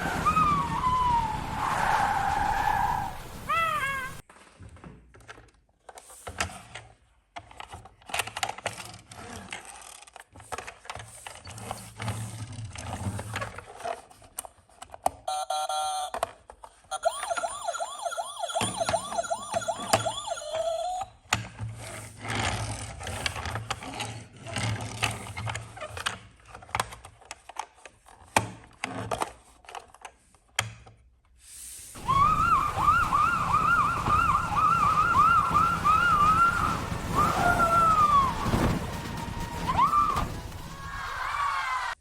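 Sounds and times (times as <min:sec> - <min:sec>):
fast siren wail: 0:00.0 - 0:04.2, 0:16.9 - 0:21.1, 0:32.0 - 0:42.0
electronic siren-like tone: 0:16.9 - 0:21.1, 0:32.0 - 0:40.8
short chirps: 0:16.9 - 0:21.1.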